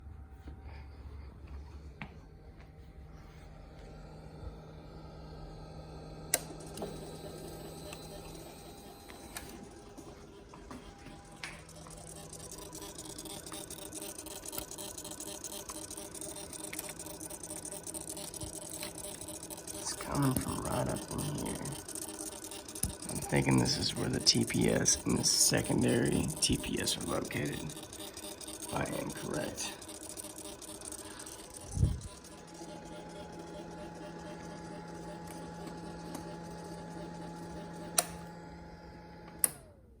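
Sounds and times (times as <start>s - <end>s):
motorcycle engine hum: 0.0s - 39.4s
rapid irregular clicking: 6.3s - 38.2s
tone winding down: 6.3s - 39.5s.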